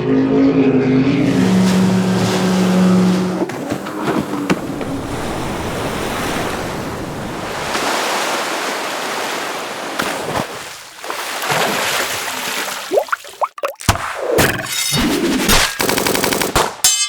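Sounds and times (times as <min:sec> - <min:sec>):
ocean waves washing in: 0:01.2 - 0:13.1.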